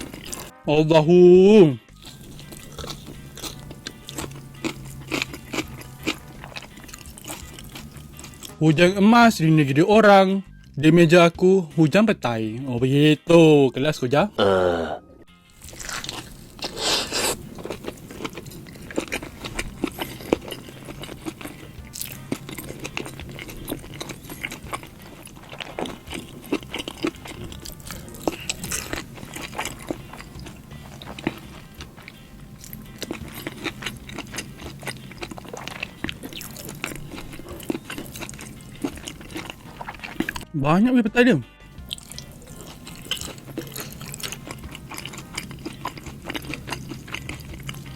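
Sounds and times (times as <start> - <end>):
chewing and crunching: 0.0 - 0.6, 1.8 - 8.6, 14.7 - 40.5, 41.8 - 47.9.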